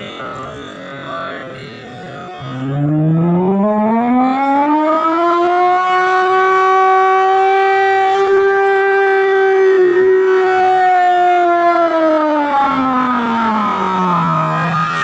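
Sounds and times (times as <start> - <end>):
siren winding up: 2.4 - 11.8.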